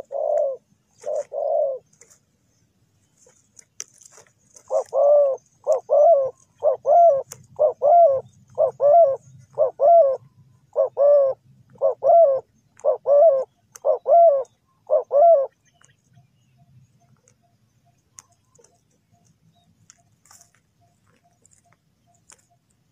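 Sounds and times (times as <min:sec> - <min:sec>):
dove cooing: 0:00.0 - 0:02.2, 0:04.5 - 0:15.7.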